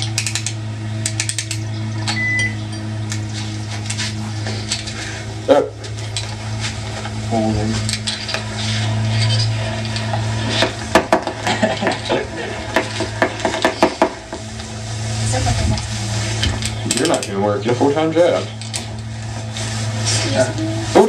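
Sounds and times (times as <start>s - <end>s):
steady low hum: 0.0s - 21.0s
hard objects clicking and knocking: 12.7s - 14.2s.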